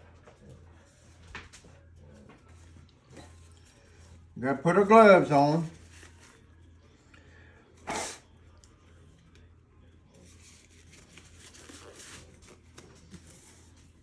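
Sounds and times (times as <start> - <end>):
gloves rustling and crinkling: 4.6 - 6.4, 10.2 - 14.0.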